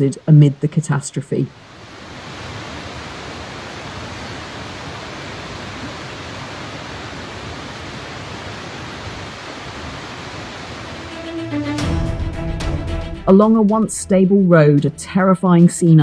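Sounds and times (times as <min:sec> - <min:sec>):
fast-flowing floodwater rushing: 0:01.5 - 0:11.5.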